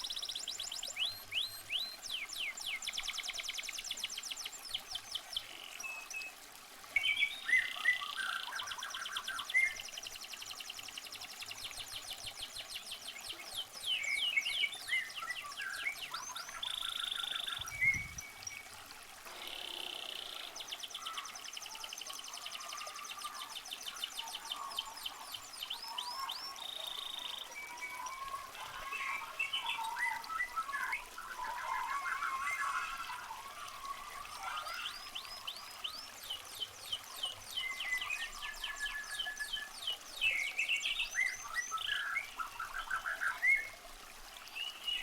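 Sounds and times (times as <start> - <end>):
birds chirping and trilling: 13.4 - 18.7, 22.6 - 43.7.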